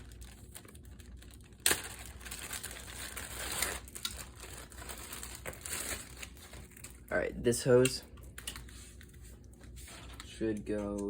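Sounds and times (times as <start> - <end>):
packaging crinkling: 0.0 - 7.2.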